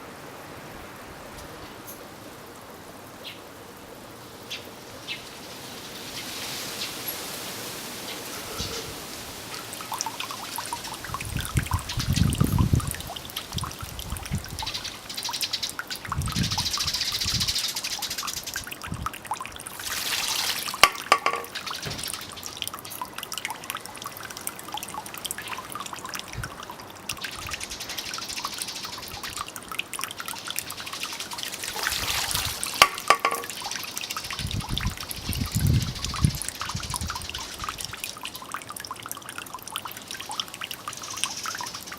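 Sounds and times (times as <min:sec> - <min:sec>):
water trickling into stone basin: 0:04.4 - 0:41.9
bamboo tube clacking on stone: 0:20.7 - 0:22.2, 0:32.5 - 0:33.6.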